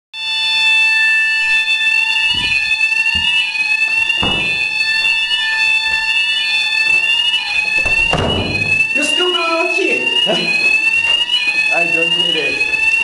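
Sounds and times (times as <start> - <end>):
fire alarm sweeping tone: 0.2 - 13.0
dull knocks: 2.3 - 3.4, 4.1 - 4.8, 7.8 - 8.8.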